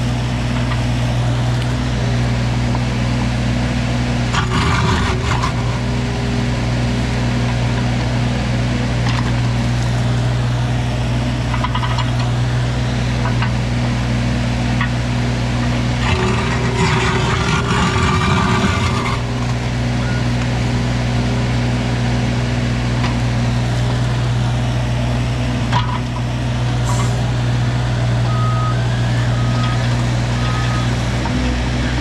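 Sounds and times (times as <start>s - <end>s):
excavator diesel engine running: 0.0s - 32.0s
warning alarm beeps: 30.4s - 31.0s.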